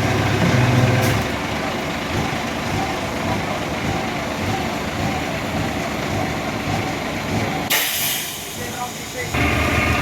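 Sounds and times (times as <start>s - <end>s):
construction site noise: 0.0s - 10.0s
diesel engine running: 0.0s - 10.0s.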